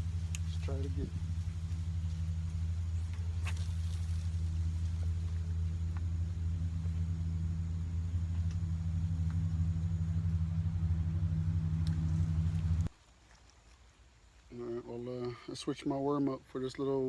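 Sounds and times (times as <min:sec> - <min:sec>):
low mechanical engine rumble: 0:00.0 - 0:13.0.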